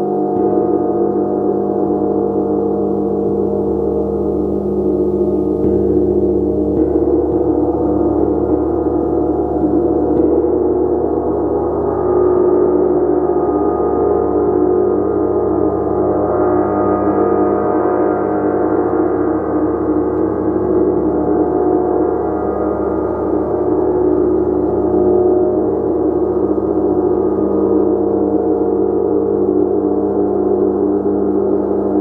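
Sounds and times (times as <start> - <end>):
gong sustained tones: 0.0 - 32.0.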